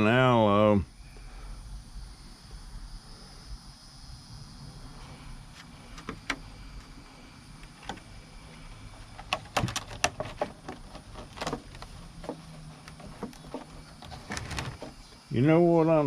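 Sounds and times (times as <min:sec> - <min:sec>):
low steady hum: 0:00.0 - 0:16.0
small objects clicking and knocking: 0:09.2 - 0:15.0.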